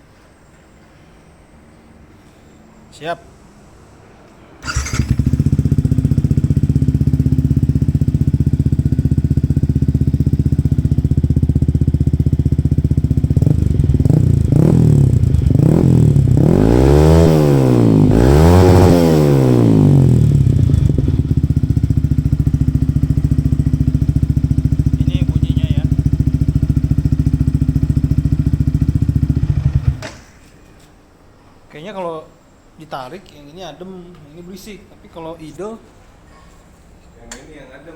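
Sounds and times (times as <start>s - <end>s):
motorcycle engine idling and revving: 4.6s - 30.3s.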